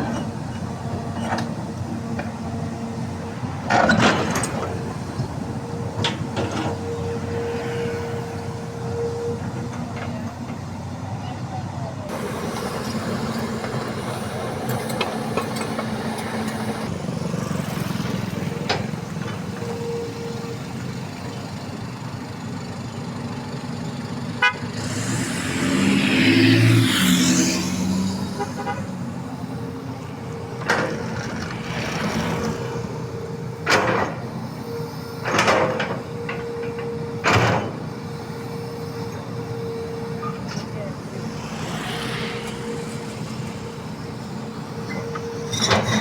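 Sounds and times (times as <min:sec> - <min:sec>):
excavator diesel engine running: 0:00.0 - 0:46.0
loud rushing: 0:24.6 - 0:28.6.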